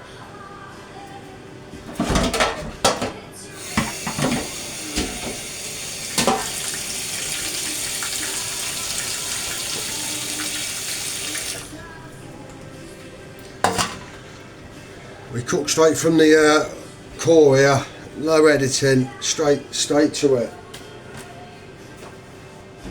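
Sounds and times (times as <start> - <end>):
tap water running into sink: 3.6 - 11.7.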